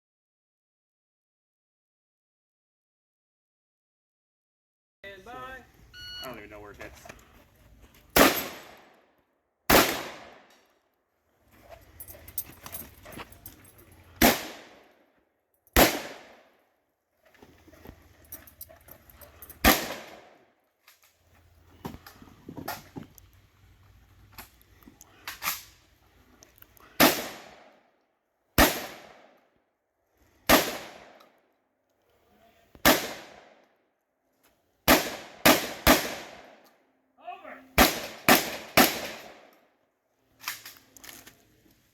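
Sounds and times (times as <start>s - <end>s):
shotgun shots with ringing echo: 8.2s - 8.8s, 9.7s - 10.5s, 14.2s - 14.8s, 15.8s - 16.4s, 19.6s - 20.3s, 27.0s - 27.6s, 28.6s - 29.2s, 30.5s - 31.2s, 32.8s - 33.5s, 34.9s - 36.5s, 37.8s - 39.4s.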